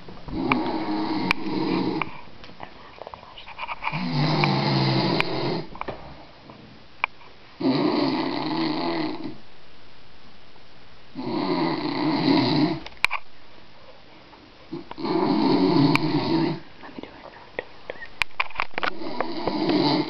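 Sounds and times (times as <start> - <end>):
man snoring loudly: 0.4 - 2.1, 3.9 - 5.7, 7.6 - 9.4, 11.2 - 12.8, 14.7 - 16.6, 19.0 - 20.0.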